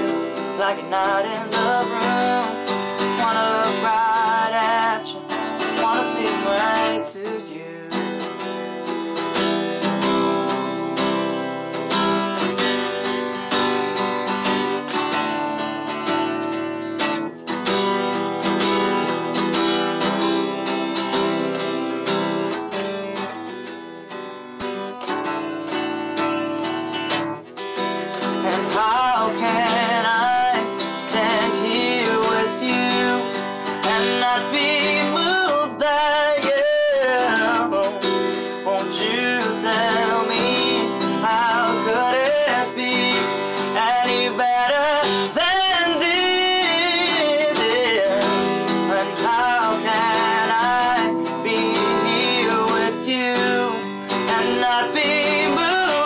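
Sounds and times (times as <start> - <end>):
person singing wordless melody: 0.0 - 8.4, 28.3 - 56.0
acoustic guitar strumming: 0.0 - 56.0.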